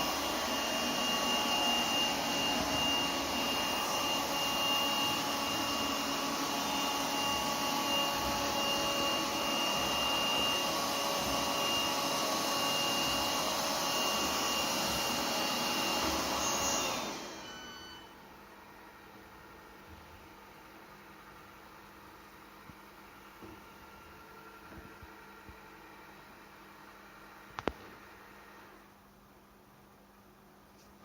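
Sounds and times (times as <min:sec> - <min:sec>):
robot vacuum whining: 0:00.0 - 0:18.1.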